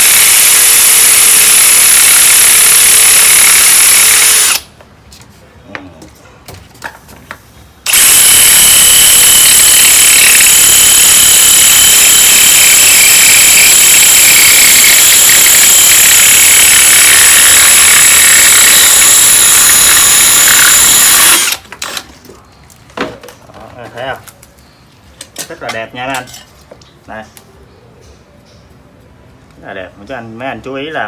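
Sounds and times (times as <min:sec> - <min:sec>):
drill grinding through glass: 0:00.0 - 0:04.7, 0:07.9 - 0:21.7.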